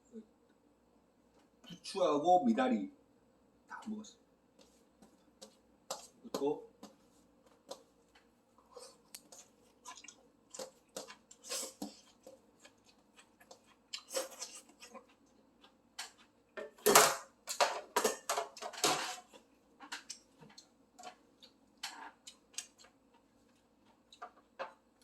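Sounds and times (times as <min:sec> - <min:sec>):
chewing with wet mouth clicks: 0:09.0 - 0:16.4, 0:21.4 - 0:24.4
tableware clinking: 0:16.6 - 0:19.3.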